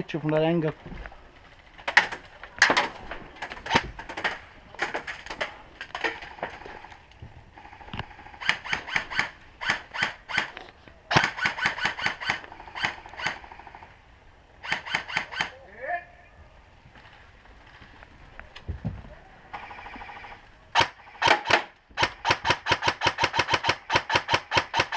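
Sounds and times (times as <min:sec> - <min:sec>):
airsoft guns firing: 0:07.6 - 0:10.5, 0:11.1 - 0:13.9, 0:14.6 - 0:15.6, 0:19.5 - 0:24.9.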